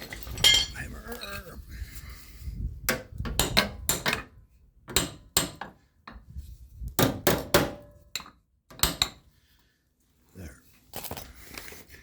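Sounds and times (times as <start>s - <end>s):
tools knocking on metal: 2.9s - 4.3s.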